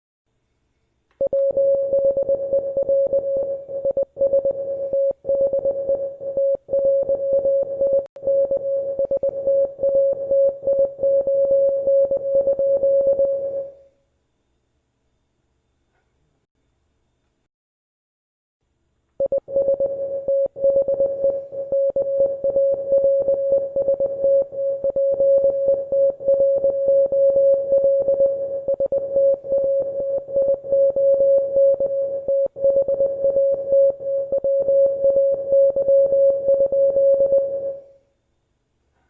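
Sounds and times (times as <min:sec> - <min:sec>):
morse code beeps: 0:01.2 - 0:13.8, 0:19.2 - 0:37.9.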